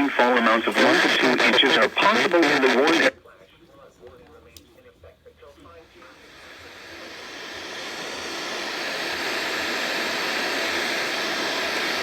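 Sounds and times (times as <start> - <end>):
radio static hiss: 0.0 - 3.8.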